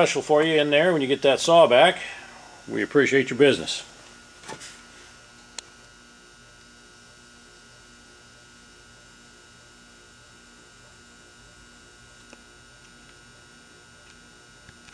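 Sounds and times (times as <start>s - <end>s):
faint electrical hum: 0.0s - 14.9s.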